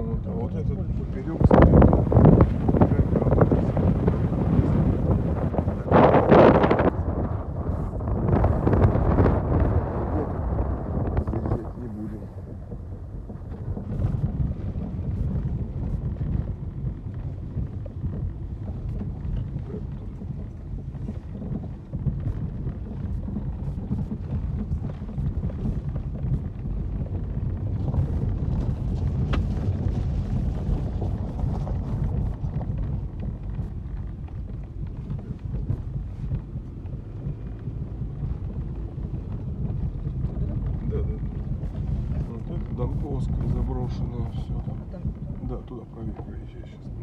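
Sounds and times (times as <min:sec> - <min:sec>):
car road rumble: 0:00.0 - 0:47.0
small knocks and rattles: 0:11.1 - 0:47.0.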